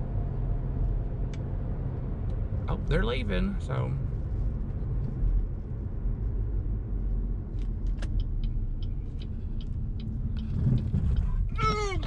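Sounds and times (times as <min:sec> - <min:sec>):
car road and engine rumble: 0:00.0 - 0:12.0
faint light ticks: 0:07.6 - 0:11.4.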